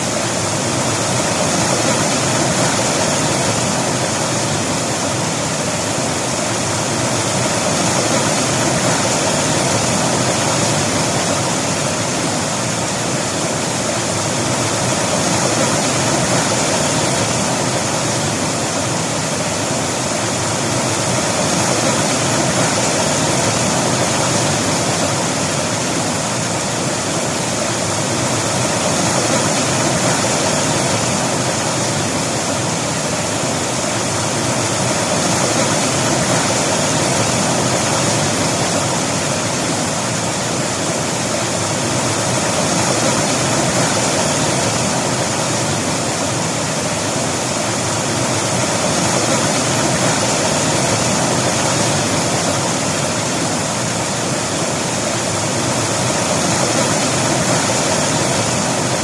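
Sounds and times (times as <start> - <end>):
river water rushing over rocks: 0.0 - 59.0.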